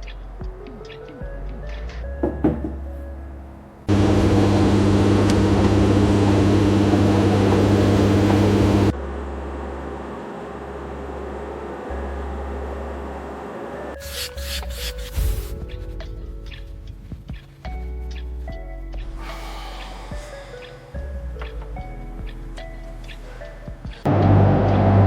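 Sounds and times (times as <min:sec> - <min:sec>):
machine humming loudly: 0:03.9 - 0:14.0, 0:24.1 - 0:25.0.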